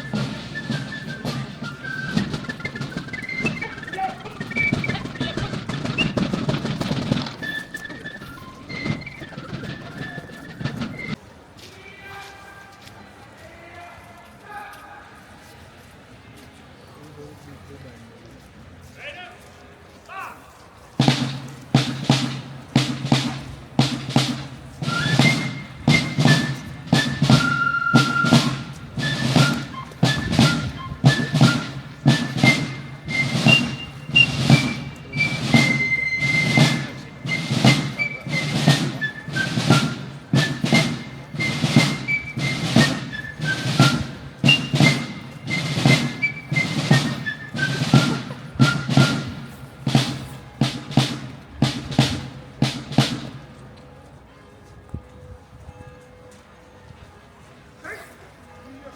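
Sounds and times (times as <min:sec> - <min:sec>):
marching drums: 0:00.0 - 0:11.2, 0:21.0 - 0:53.6.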